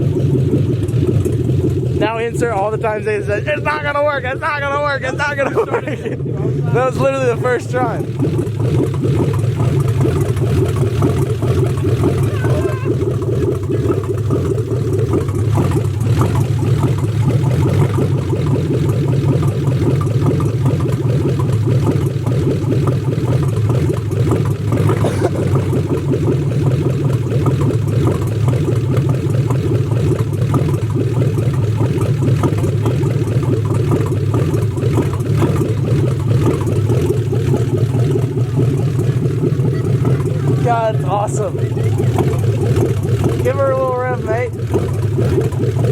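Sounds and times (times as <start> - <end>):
car engine idling: 0.0 - 45.9.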